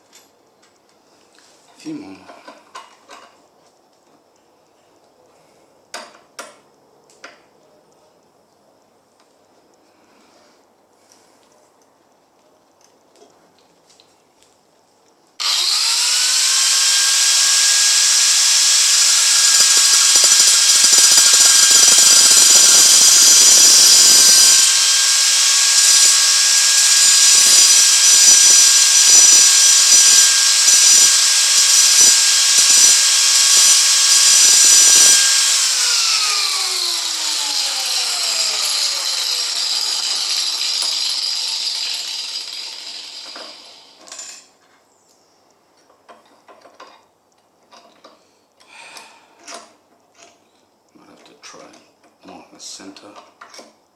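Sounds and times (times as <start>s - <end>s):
power tool cutting a bolt: 15.4s - 44.3s.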